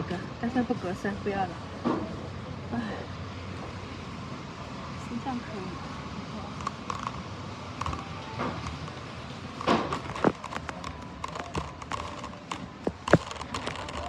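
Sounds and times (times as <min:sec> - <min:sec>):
steady store hum: 0:00.0 - 0:14.0
groceries knocking and clicking: 0:06.6 - 0:14.0.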